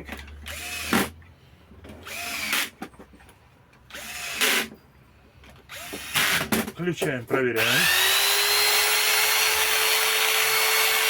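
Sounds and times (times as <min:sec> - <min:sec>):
power screwdriver running: 0:00.4 - 0:01.1, 0:02.0 - 0:02.7, 0:03.9 - 0:04.7, 0:05.7 - 0:06.5, 0:07.6 - 0:11.0.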